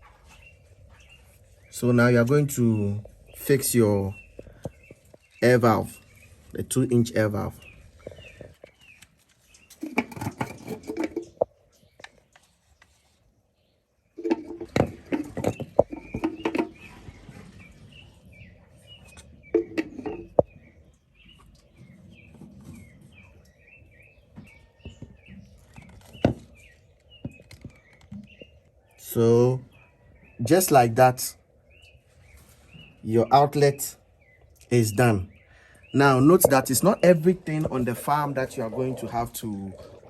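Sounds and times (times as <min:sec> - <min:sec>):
small birds chirping: 0:00.0 - 0:40.0
plastic plumbing fittings knocking: 0:09.8 - 0:11.5, 0:14.2 - 0:16.8, 0:19.5 - 0:20.5.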